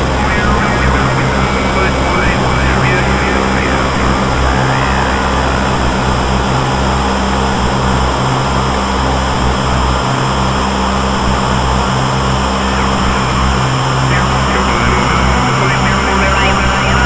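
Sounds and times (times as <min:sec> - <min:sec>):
synthesizer hiss: 0:00.0 - 0:10.4
low synthesizer drone: 0:00.0 - 0:17.0.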